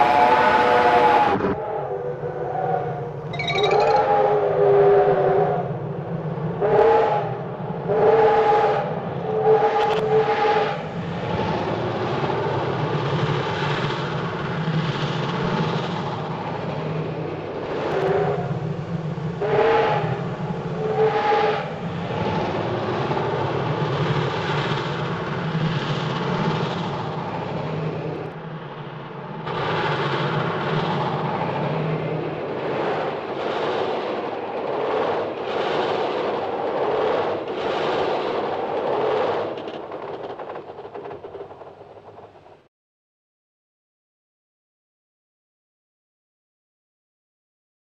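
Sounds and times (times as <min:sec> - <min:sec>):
train whistle toots: 0:00.0 - 0:05.7, 0:06.6 - 0:10.8, 0:17.9 - 0:18.6, 0:19.4 - 0:21.8.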